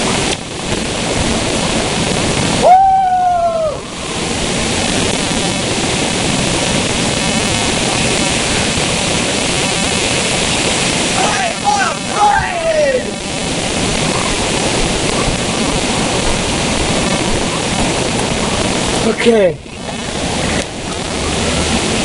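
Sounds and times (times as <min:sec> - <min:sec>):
rain rushing: 0:00.0 - 0:22.0
person yelling: 0:02.6 - 0:03.8, 0:11.2 - 0:13.2.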